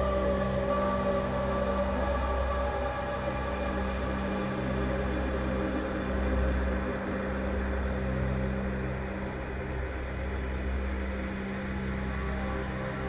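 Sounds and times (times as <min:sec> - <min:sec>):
ambient drone music: 0:00.0 - 0:13.0.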